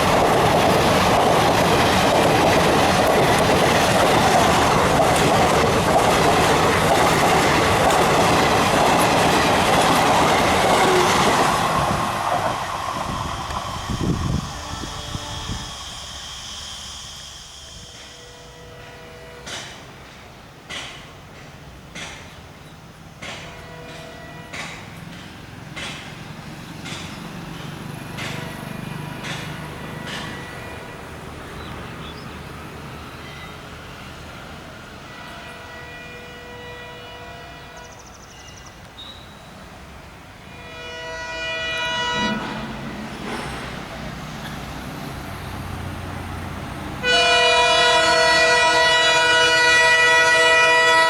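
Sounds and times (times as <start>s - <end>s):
locomotive engine rumble: 0.0s - 19.8s
locomotive horn blast: 10.2s - 11.6s, 13.2s - 16.3s, 17.5s - 20.0s, 29.6s - 31.2s, 35.0s - 38.0s, 40.4s - 42.9s, 47.0s - 51.0s.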